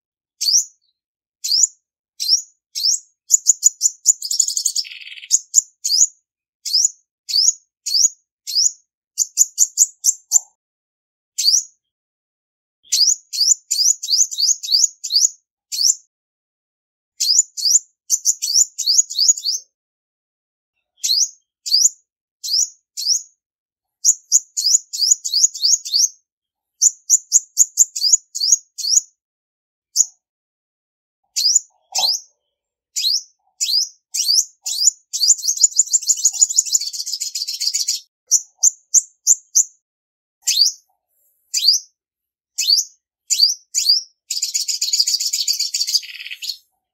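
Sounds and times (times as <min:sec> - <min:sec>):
sunbird chirping: 0:00.4 - 0:10.4, 0:31.4 - 0:39.7, 0:40.4 - 0:41.9, 0:42.6 - 0:46.7.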